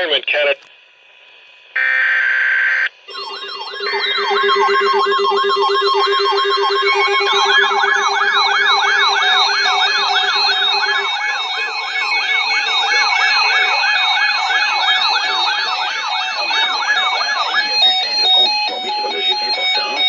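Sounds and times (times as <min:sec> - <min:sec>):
steady lower tone: 0:03.1 - 0:17.5
alert tone sweeping up and down: 0:03.1 - 0:19.4.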